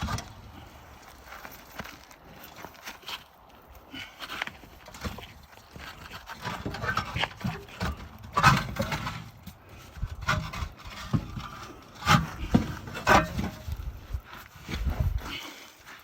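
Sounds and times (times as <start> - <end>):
scraping and rubbing: 4.2 - 16.0.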